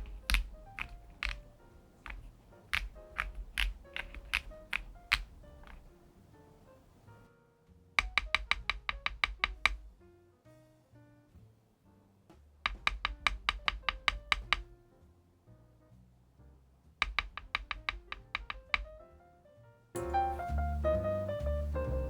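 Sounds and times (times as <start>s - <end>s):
mechanical keyboard typing: 0.0s - 6.0s, 8.0s - 9.9s, 12.7s - 14.7s, 17.0s - 18.9s
soft background music: 18.3s - 22.0s.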